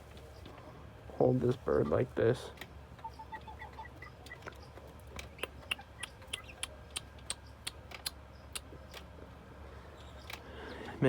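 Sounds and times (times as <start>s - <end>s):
sharp irregular clicks: 4.2s - 9.1s.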